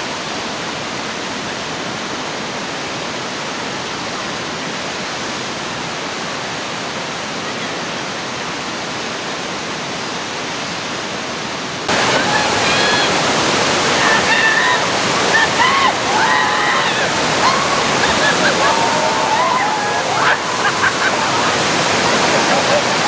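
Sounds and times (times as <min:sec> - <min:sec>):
waterfall rushing water: 0:00.0 - 0:23.0.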